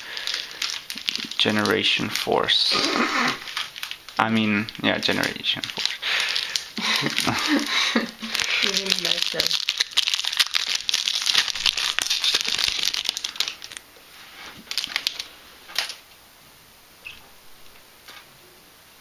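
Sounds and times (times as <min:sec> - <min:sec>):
foil wrapper crinkling and tearing: 0:00.0 - 0:16.0.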